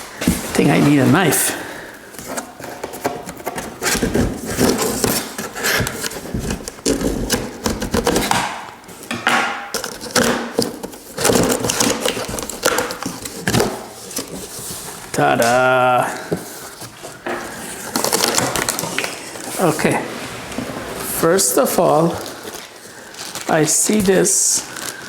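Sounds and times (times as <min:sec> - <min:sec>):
knife cutting cardboard box: 0:02.2 - 0:08.6, 0:09.8 - 0:15.6.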